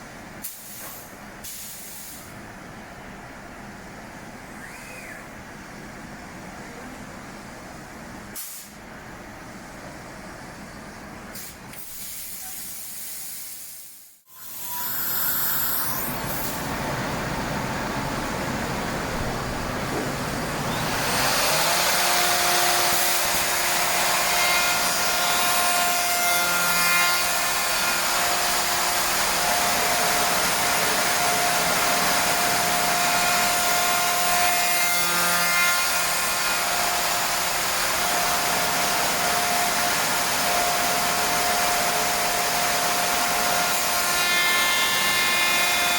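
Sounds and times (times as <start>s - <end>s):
wood milling machine cutting: 20.4s - 45.9s.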